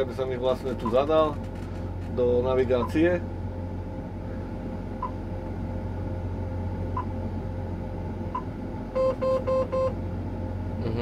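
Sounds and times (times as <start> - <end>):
electronic warning beeps: 8.4 - 10.0.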